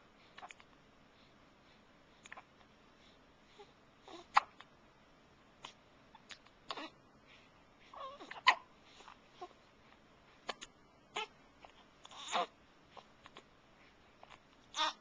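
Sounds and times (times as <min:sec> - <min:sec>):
baby hiccuping: 0:04.1 - 0:04.7, 0:08.0 - 0:08.7
baby fussing: 0:07.9 - 0:09.6, 0:10.4 - 0:13.4, 0:14.2 - 0:15.0.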